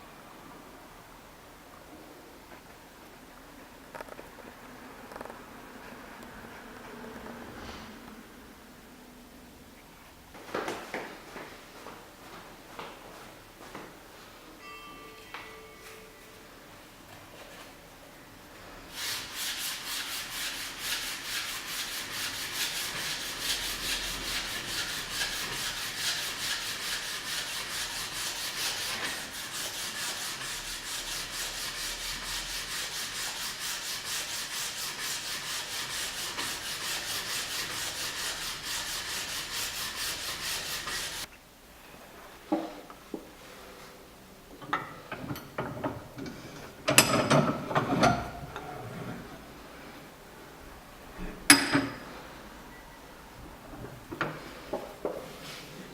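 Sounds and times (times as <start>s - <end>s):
wood being sanded: 18.9s - 41.3s.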